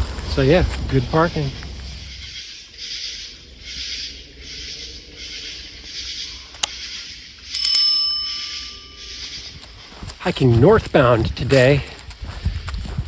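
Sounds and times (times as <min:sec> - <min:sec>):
short bell-like ring: 0:07.6 - 0:09.5.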